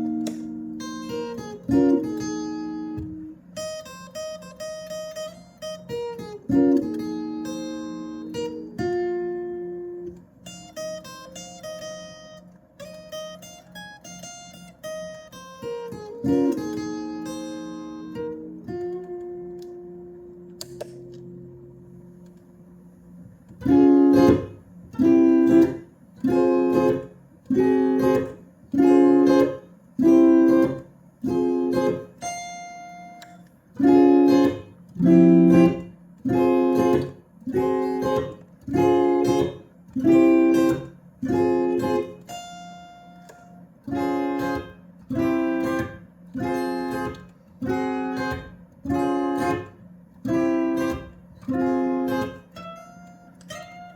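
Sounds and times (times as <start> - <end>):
electric guitar chord strums: 0.0 - 53.9
single high guitar note: 23.6 - 32.4, 33.1 - 42.3.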